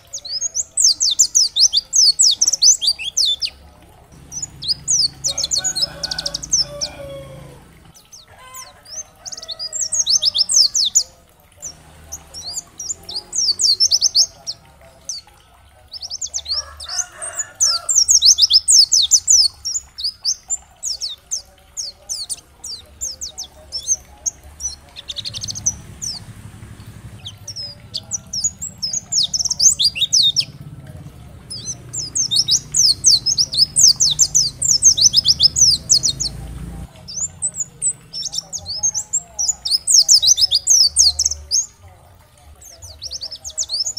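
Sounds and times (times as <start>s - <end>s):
bird twittering: 0.0s - 3.6s, 4.2s - 41.8s
low hum: 4.2s - 5.8s, 24.3s - 37.0s.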